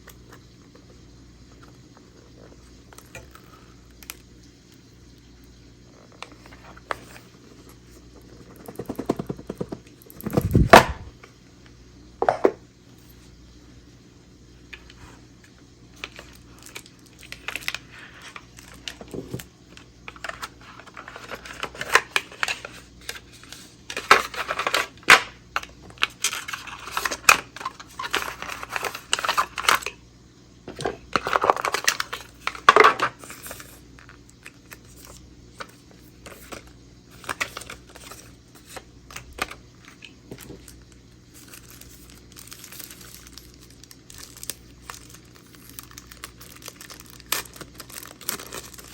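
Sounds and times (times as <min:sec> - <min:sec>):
faint steady hum: 0:00.0 - 0:48.9
packaging crinkling and tearing: 0:16.0 - 0:30.0, 0:31.1 - 0:48.9.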